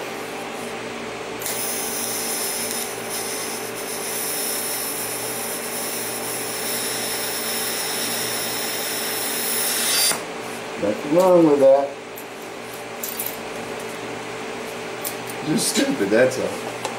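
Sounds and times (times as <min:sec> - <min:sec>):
electric grinder grinding steel: 0:01.4 - 0:10.2.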